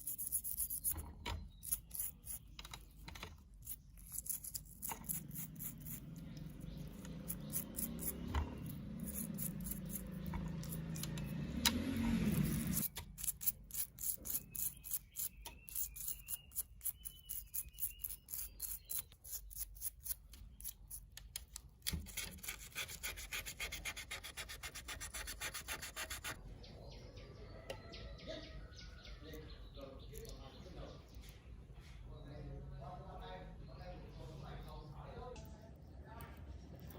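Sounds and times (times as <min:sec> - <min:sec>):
rapid rhythmic rubbing strokes: 0:22.1 - 0:26.4.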